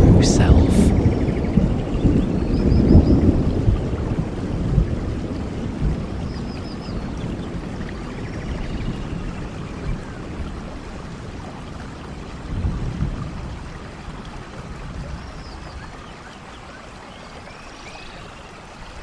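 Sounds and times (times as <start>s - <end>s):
stream flowing: 0.0s - 1.6s, 2.4s - 19.0s.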